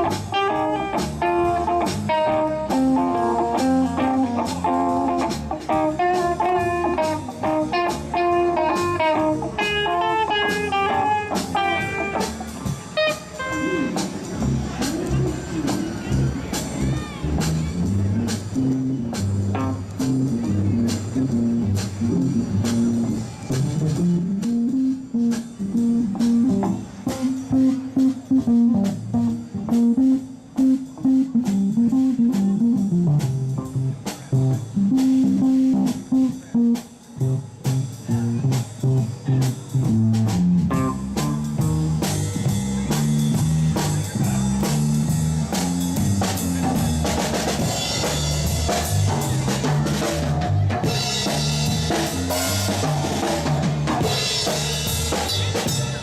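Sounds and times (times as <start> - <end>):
cymbals: 0.0 - 24.1, 40.7 - 56.0
bass guitar line: 0.0 - 56.0
guitar: 0.0 - 56.0
drum kit hits: 37.2 - 56.0.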